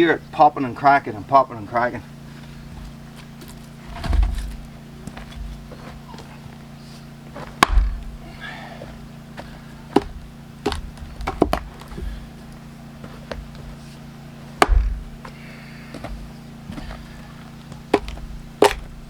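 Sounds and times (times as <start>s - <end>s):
wood knocks and cracks: 3.4s - 5.6s, 7.6s - 8.2s, 10.0s - 12.2s, 14.6s - 15.3s, 17.7s - 19.0s
axe striking wood: 7.6s - 8.2s, 9.9s - 12.1s, 14.6s - 15.4s, 17.8s - 19.0s.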